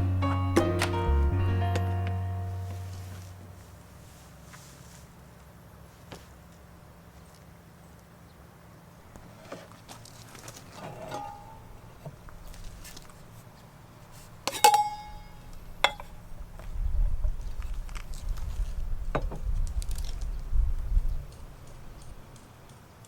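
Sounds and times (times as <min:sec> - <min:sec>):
sharp metallic clink: 0:14.5 - 0:16.2.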